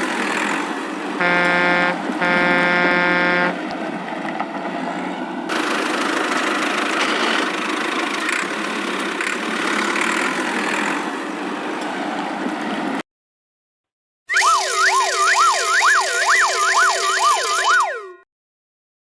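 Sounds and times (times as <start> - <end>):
cartoon vehicle engine running: 0.0 - 3.6, 5.5 - 11.2, 14.3 - 18.3
wailing siren: 1.2 - 3.7, 14.3 - 18.3.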